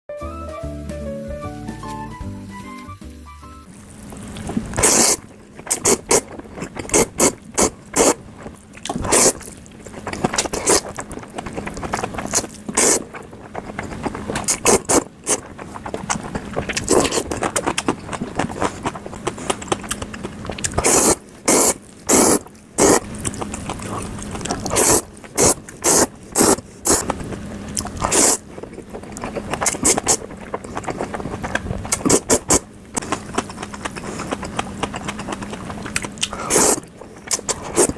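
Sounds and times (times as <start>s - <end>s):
faint steady hum: 0.3s - 37.9s
chewing: 4.0s - 37.9s
wet noodle slurps: 4.2s - 37.9s.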